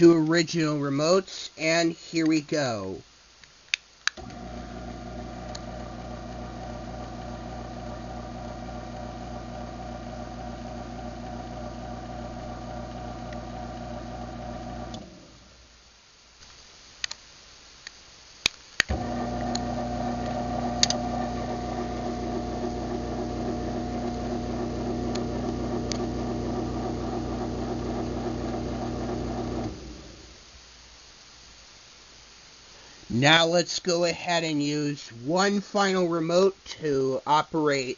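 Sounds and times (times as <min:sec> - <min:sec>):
sharp clicks: 0:03.4 - 0:04.4
garage door opener humming: 0:04.2 - 0:15.4, 0:18.9 - 0:30.3.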